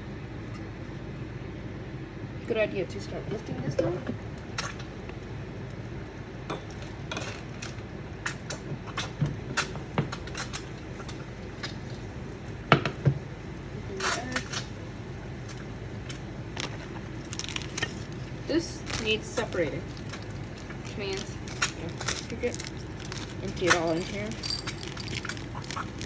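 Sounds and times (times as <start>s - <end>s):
range hood fan humming: 0.0s - 26.0s
utensils clinking on pots and dishes: 21.2s - 26.0s.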